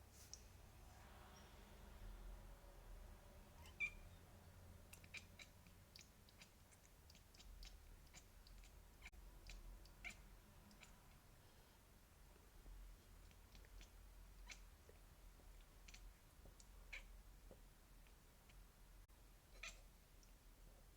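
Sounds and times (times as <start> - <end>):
cat chattering clicks and chirps: 4.9 - 11.0.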